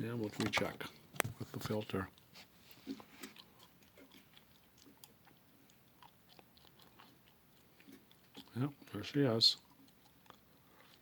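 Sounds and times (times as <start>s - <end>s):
small handling noises: 0.0s - 5.8s.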